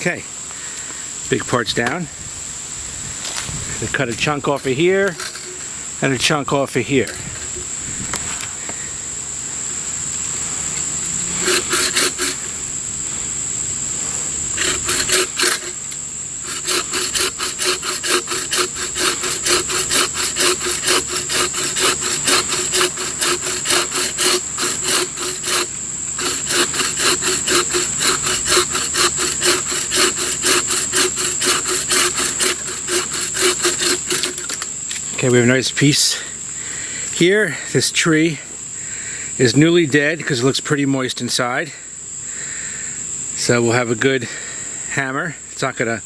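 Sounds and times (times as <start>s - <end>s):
hand saw cutting wood: 4.1s - 7.8s, 10.3s - 12.8s, 13.9s - 35.4s.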